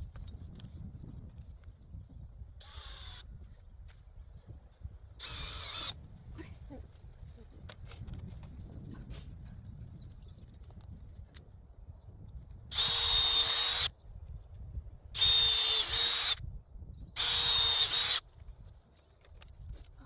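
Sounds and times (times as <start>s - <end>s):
power drill running: 2.6s - 3.2s, 5.2s - 6.0s, 12.7s - 13.9s, 15.2s - 16.4s, 17.2s - 18.2s.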